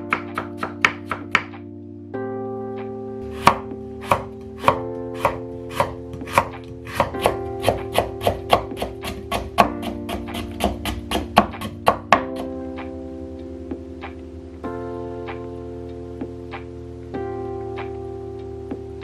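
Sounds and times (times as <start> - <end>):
knife chopping on cutting board: 3.3 - 12.5.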